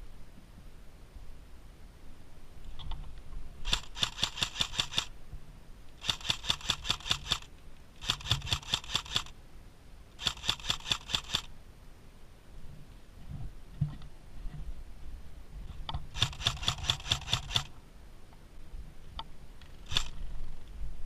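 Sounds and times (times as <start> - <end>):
sharp mechanical clicking: 3.6 - 5.2, 6.0 - 9.4, 10.2 - 11.5, 15.9 - 17.8, 19.6 - 20.2.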